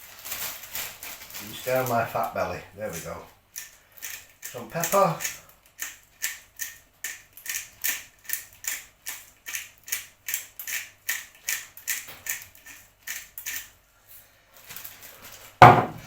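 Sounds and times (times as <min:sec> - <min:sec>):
pepper grinder grinding: 0:01.4 - 0:13.8.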